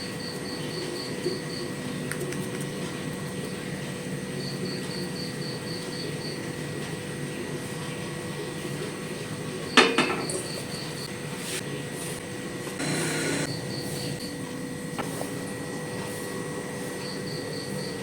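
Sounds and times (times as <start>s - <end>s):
faint steady hum: 12.8s - 18.0s.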